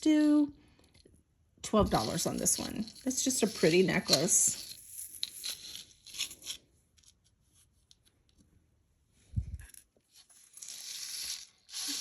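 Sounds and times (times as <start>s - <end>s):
necklace chain and beads clicking: 1.9s - 6.6s.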